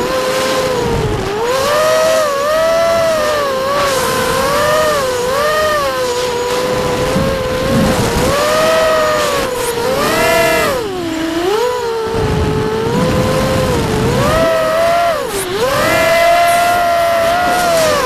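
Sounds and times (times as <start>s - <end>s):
quadcopter motors whining: 0.0s - 18.0s.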